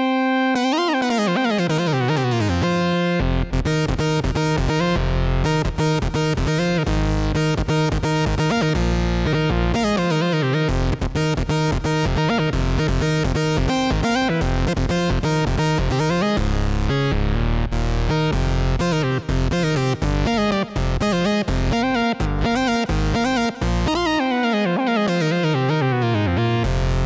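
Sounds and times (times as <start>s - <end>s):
synthesizer plucky notes: 19.6s - 27.0s.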